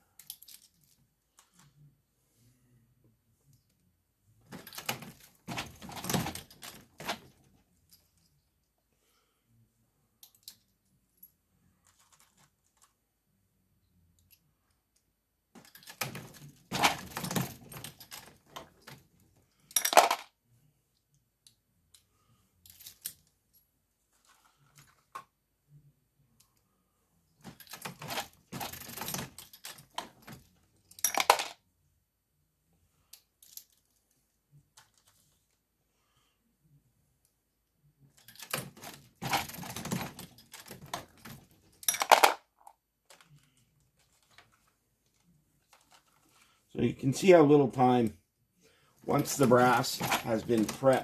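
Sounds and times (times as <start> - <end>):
brass cases clinking and rattling: 4.6 - 8.1, 15.6 - 18.9, 19.7 - 20.3, 27.5 - 31.6, 38.2 - 42.5, 49.1 - 51.0.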